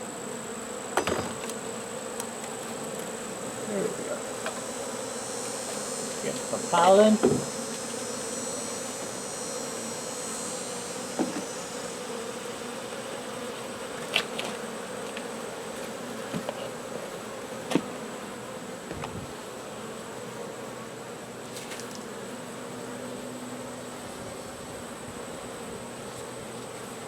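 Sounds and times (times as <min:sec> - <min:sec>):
honey bees buzzing: 0:00.0 - 0:27.0
clicks of hive being handled: 0:00.7 - 0:03.2, 0:03.9 - 0:08.1, 0:11.1 - 0:11.6, 0:13.4 - 0:19.4, 0:21.4 - 0:22.3.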